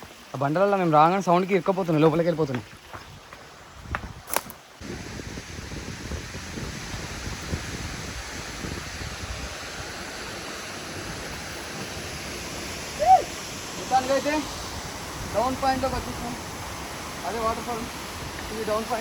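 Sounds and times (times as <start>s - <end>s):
waterfall rushing: 4.8s - 19.0s.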